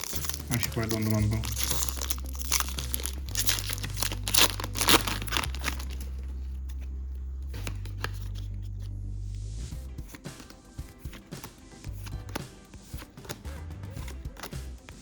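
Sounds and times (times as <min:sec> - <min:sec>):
foil wrapper tearing: 0:00.0 - 0:08.8
foil wrapper crinkling: 0:00.0 - 0:08.9.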